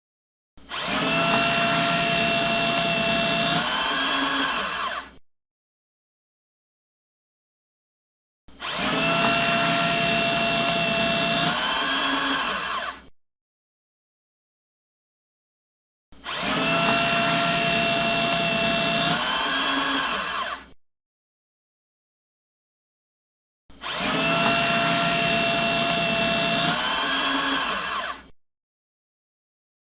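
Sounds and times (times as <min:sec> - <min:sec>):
paper shredder motor whine: 0:00.6 - 0:05.2, 0:08.5 - 0:13.1, 0:16.2 - 0:20.8, 0:23.7 - 0:28.4.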